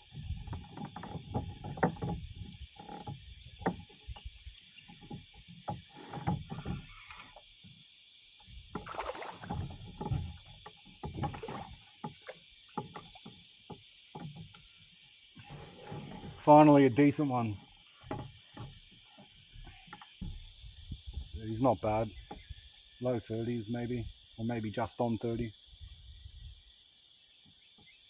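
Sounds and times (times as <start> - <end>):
knocks and thumps on kayak hull: 0.0 - 7.8, 8.4 - 21.4
insects droning: 0.0 - 28.0
water splashes: 8.6 - 14.3.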